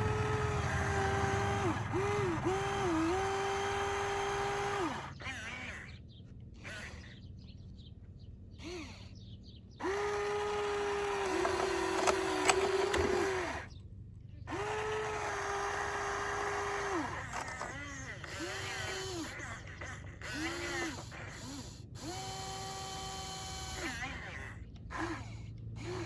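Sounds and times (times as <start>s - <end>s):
small electric motor whining: 0.0s - 5.8s, 8.6s - 9.1s, 9.8s - 13.7s, 14.5s - 26.0s
sharp clicks: 10.4s - 13.6s.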